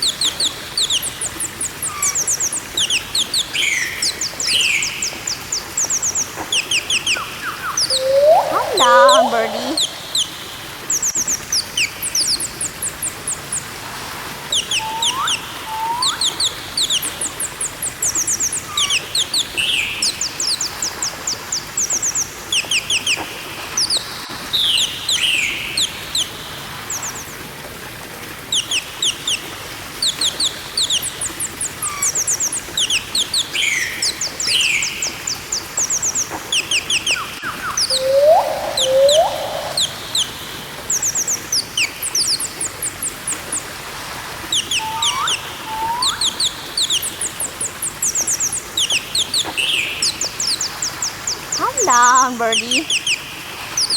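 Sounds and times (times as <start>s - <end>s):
parrot chirping: 6.6s - 10.3s, 14.5s - 17.2s, 36.5s - 40.4s, 44.5s - 48.0s, 51.6s - 53.2s
parrot whistled calls: 6.9s - 10.3s, 14.5s - 17.1s, 36.5s - 40.4s, 44.5s - 48.0s.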